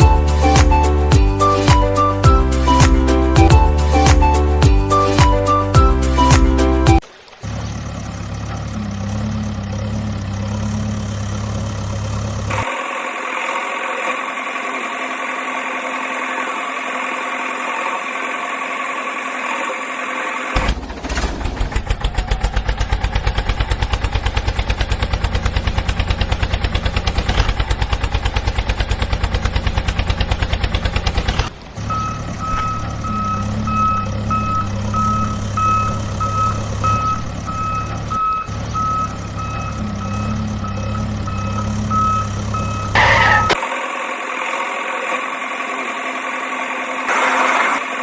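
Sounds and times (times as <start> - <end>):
vehicle engine chugging: 0.0 - 48.0
reversing alarm beeping: 31.8 - 43.6.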